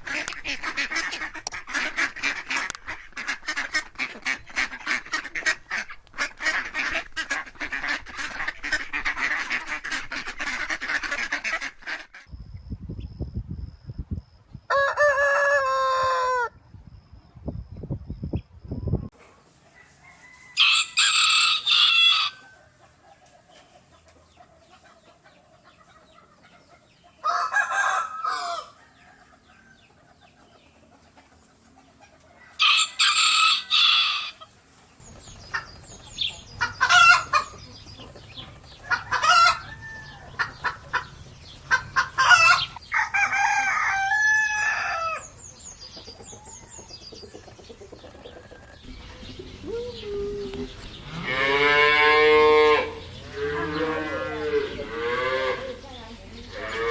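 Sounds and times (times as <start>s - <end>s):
chickens clucking: 0.0s - 12.3s, 21.0s - 51.4s
rooster crowing: 14.7s - 16.6s, 19.8s - 22.6s, 27.2s - 29.8s, 32.4s - 34.4s, 36.9s - 45.4s.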